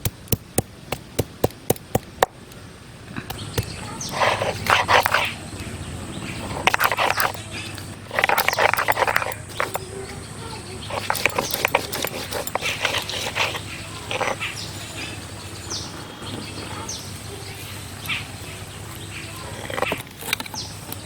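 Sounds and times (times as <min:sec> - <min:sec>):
sharp clicks and knocks: 0:00.0 - 0:02.6, 0:03.3 - 0:05.3, 0:06.6 - 0:09.9, 0:10.8 - 0:14.4.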